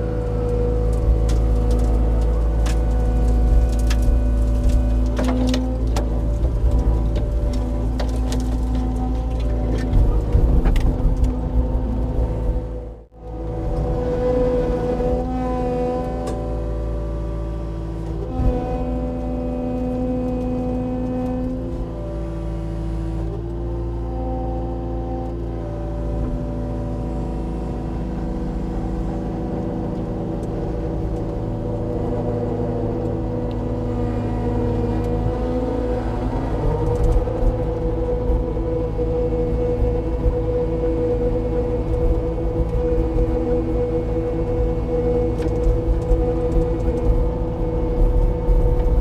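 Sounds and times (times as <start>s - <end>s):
large engine rumbling: 0.0s - 49.0s.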